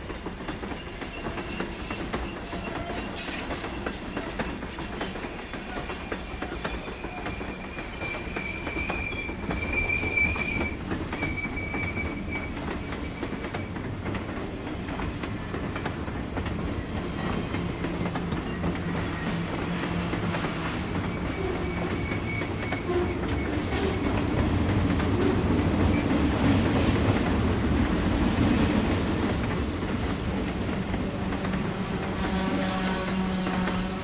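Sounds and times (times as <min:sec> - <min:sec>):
train wheels clattering over rails: 0:00.0 - 0:34.0
high-pitched wheel squeal: 0:06.6 - 0:15.5, 0:16.1 - 0:17.4, 0:20.9 - 0:24.1.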